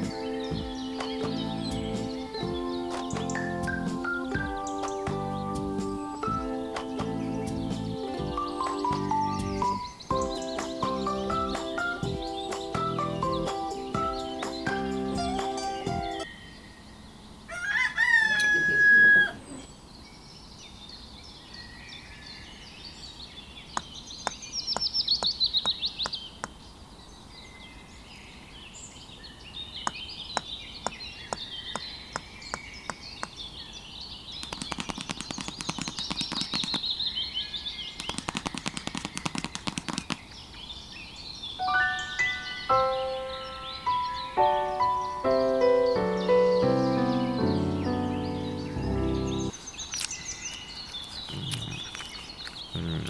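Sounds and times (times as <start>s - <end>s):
birds chirping: 0.0s - 53.0s
rooster crowing: 17.5s - 19.4s
rapid clicking rattles: 34.4s - 36.8s, 38.0s - 40.2s.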